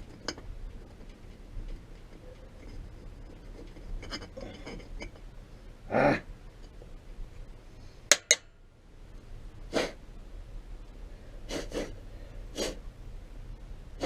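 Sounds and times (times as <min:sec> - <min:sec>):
puffs of breath blown by mouth: 0:11.5 - 0:12.8.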